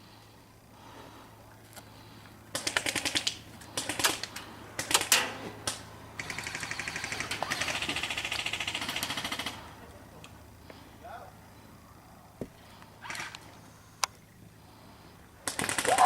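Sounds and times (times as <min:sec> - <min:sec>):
airsoft guns firing: 0:02.5 - 0:09.7, 0:15.4 - 0:16.0.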